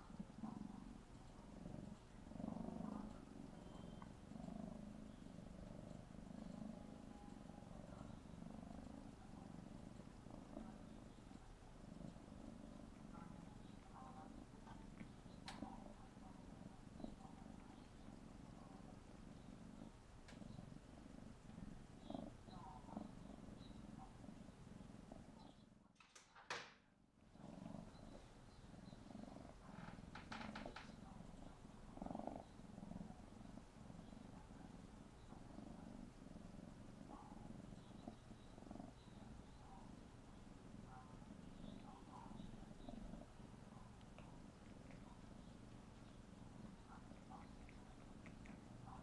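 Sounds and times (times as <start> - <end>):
kitten purring: 0.0 - 26.0, 27.0 - 49.0
soft clicks: 14.7 - 15.8.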